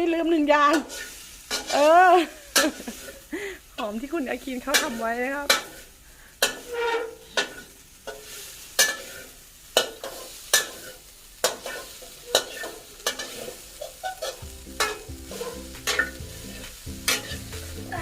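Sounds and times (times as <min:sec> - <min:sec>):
meat sizzling: 0:00.0 - 0:18.0
spatula scraping a pan: 0:00.6 - 0:03.3, 0:04.6 - 0:18.0.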